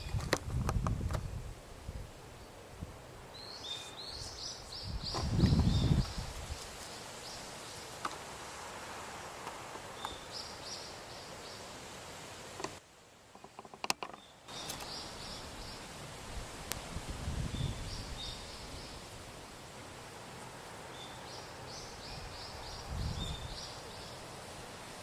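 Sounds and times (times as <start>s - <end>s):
background hiss: 0.0s - 25.0s.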